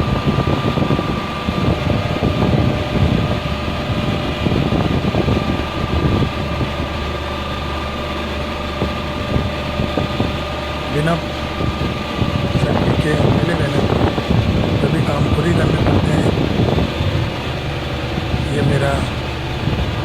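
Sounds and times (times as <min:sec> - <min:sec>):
air conditioner hum: 0:00.0 - 0:20.0
low rumbles: 0:00.0 - 0:20.0.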